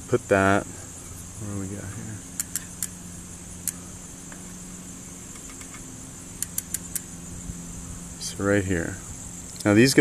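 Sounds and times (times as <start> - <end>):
high insect buzz: 0.0 - 10.0
steady low hum: 0.0 - 10.0
spoke wrench metallic clicks: 6.4 - 7.0.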